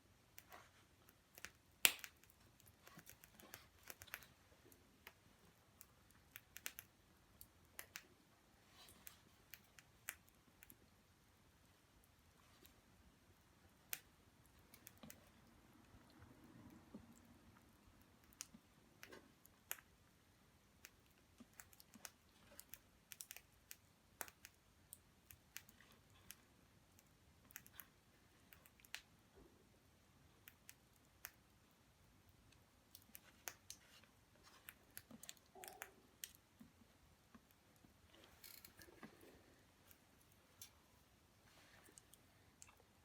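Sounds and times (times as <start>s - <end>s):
faint sharp clicks and ticks: 0.0s - 43.0s.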